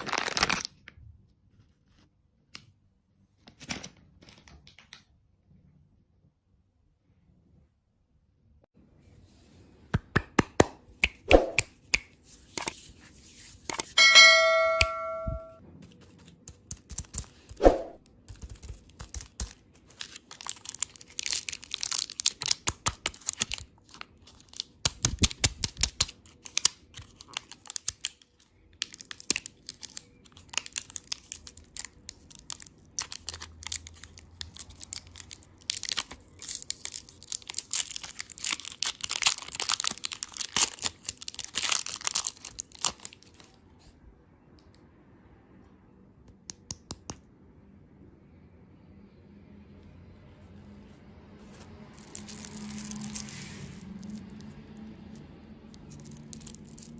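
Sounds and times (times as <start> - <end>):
plastic packaging crinkling: 0.0 - 0.9, 18.3 - 43.6, 51.7 - 54.6, 55.7 - 56.9
bell-like ding: 14.0 - 15.6.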